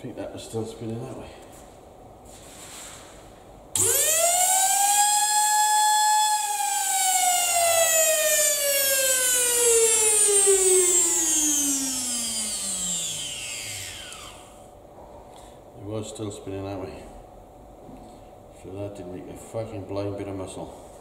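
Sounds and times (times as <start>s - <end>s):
vacuum cleaner motor whine: 3.8s - 14.6s.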